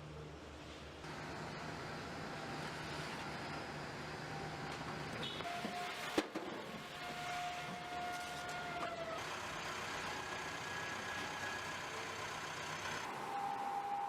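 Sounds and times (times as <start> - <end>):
machinery whine: 7.1 - 14.0.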